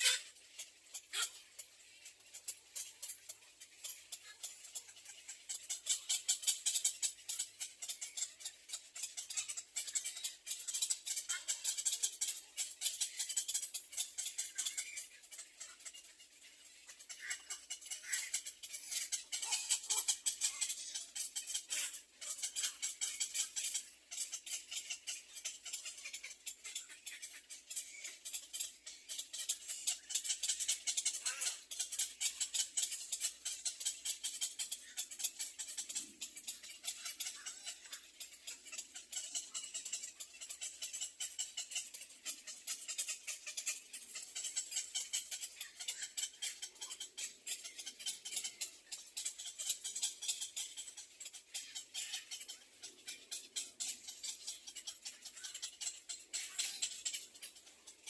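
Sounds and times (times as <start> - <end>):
baby bird chirping: 0.0 - 0.3, 3.9 - 16.0, 17.0 - 58.0.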